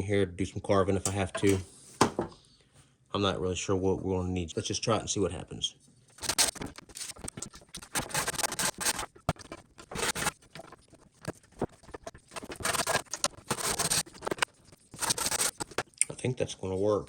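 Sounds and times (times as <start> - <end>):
sandpaper rubbing on wood: 7.8 - 9.1, 11.2 - 15.8.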